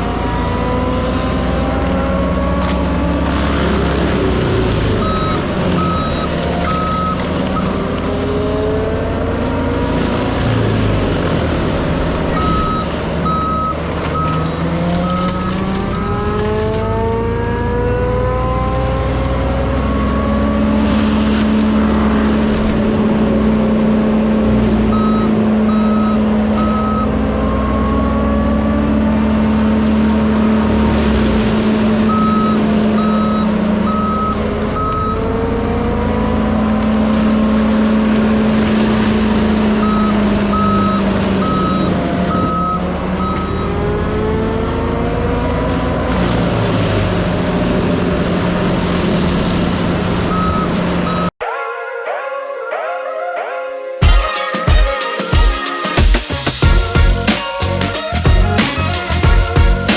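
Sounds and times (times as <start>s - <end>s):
backup alarm beeping: 0.0s - 9.8s, 12.2s - 18.0s, 24.8s - 28.7s, 32.1s - 35.6s, 39.6s - 44.8s, 50.2s - 51.4s
diesel mulching machine working: 0.0s - 51.3s.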